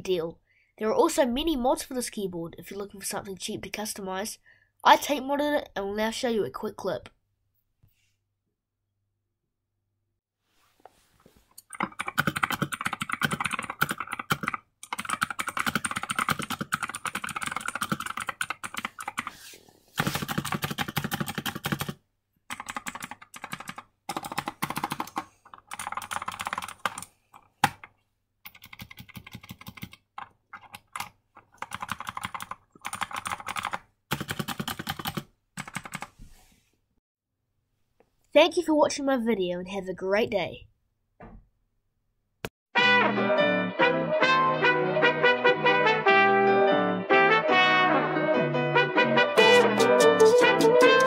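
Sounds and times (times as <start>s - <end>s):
mechanical keyboard typing: 11.6s - 19.3s, 20.0s - 27.9s, 28.5s - 36.1s.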